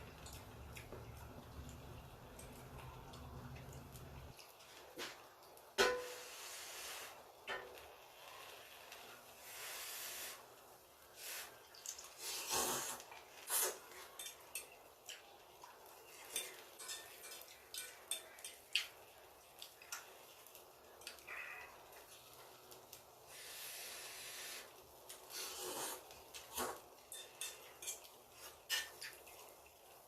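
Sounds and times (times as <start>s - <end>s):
chewing with mouth smacks: 0.0s - 4.7s.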